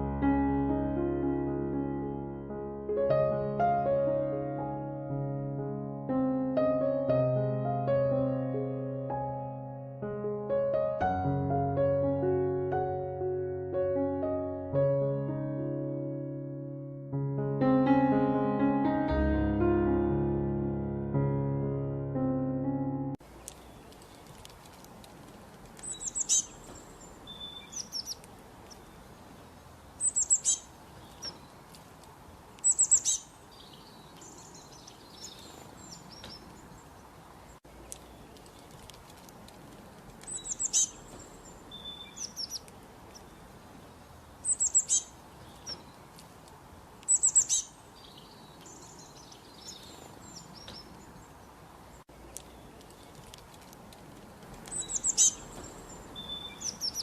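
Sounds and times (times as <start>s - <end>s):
songbirds chirping and trilling: 23.2s - 57.0s.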